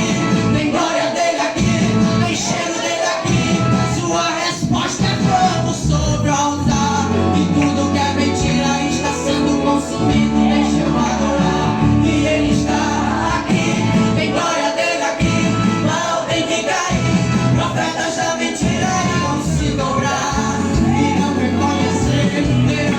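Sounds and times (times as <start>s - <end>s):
gospel singing with band: 0.0s - 22.9s.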